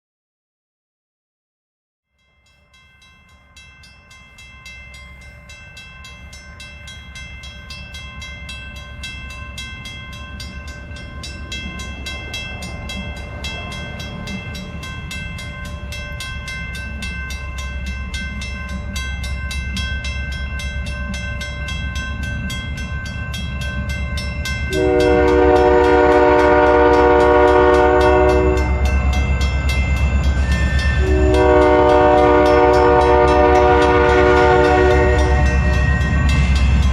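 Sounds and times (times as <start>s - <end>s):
diesel locomotive rumble: 10.3s - 36.9s
train horn blast: 24.7s - 28.8s, 31.0s - 35.8s.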